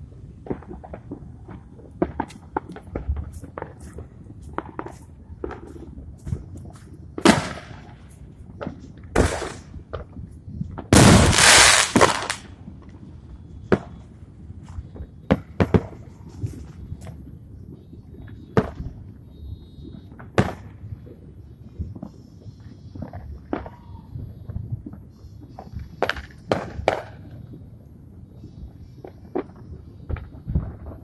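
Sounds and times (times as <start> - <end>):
fireworks booming: 9.2 - 9.8, 10.9 - 12.4
fireworks cracking: 9.2 - 9.8, 11.0 - 12.5.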